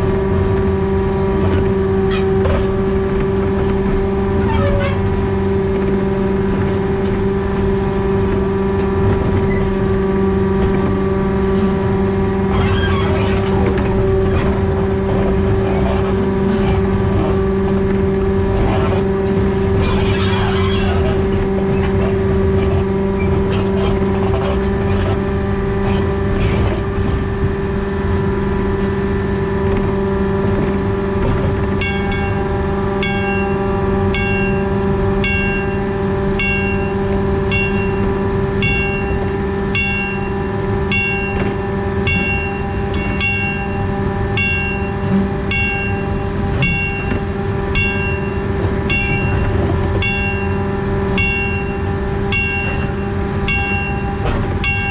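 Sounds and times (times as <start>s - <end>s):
diesel engine humming: 0.0s - 54.9s
rumbling rail noise: 0.0s - 54.9s
bell ringing: 31.8s - 54.9s.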